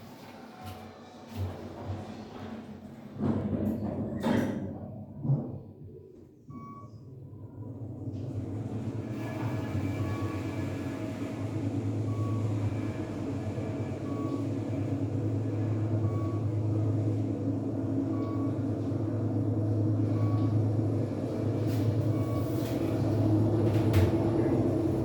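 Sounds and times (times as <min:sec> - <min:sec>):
elevator machinery hum: 0:07.5 - 0:25.0.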